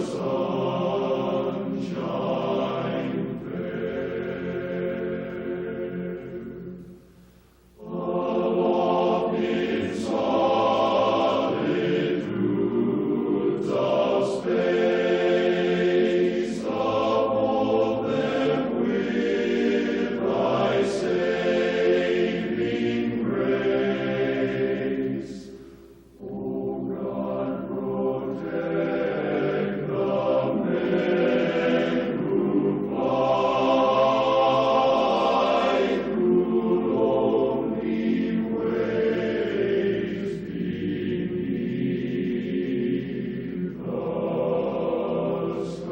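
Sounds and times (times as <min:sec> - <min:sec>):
choir singing long held notes: 0:00.0 - 0:45.9.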